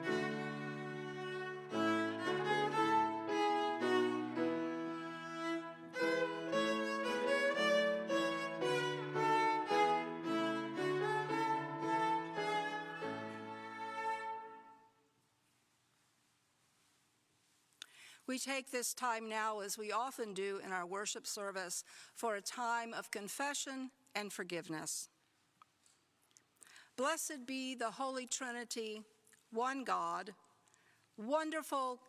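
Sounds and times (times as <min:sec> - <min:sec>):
violin melody: 0:00.0 - 0:14.9.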